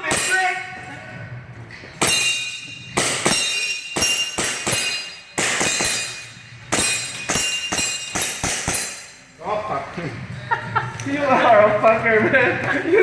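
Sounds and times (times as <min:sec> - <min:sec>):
pellets ringing on steel targets: 0:00.0 - 0:00.9, 0:02.0 - 0:09.4.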